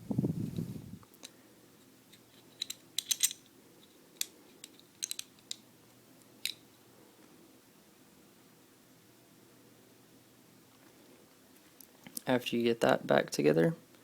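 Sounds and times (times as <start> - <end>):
pistol parts clicking metal: 2.1 - 3.5, 4.2 - 5.7, 6.4 - 6.7.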